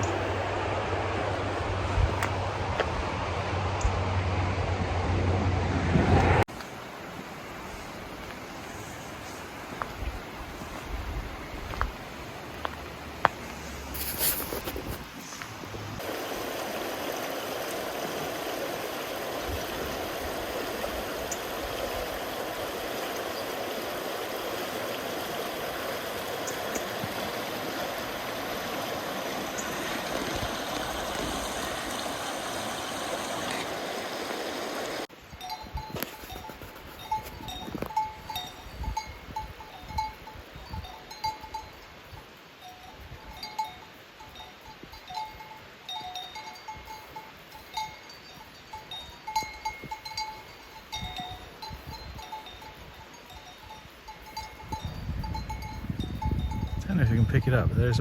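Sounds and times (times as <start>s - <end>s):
livestock bells clanking: 35.4s - 41.8s, 42.6s - 58.0s.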